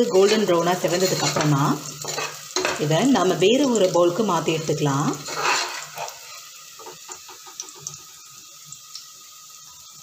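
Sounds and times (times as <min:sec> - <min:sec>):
spoon scraping and stirring: 0:00.0 - 0:02.8, 0:05.0 - 0:08.0
ghee sizzling and crackling: 0:00.0 - 0:10.0.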